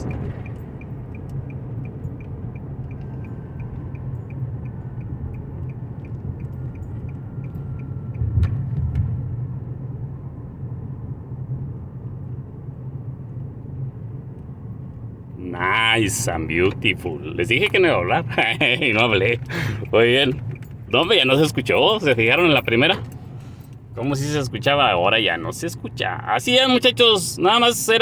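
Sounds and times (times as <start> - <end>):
light regular ticking: 0.0 - 8.2, 16.7 - 24.3
road and tyre rumble in cabin: 0.0 - 28.0.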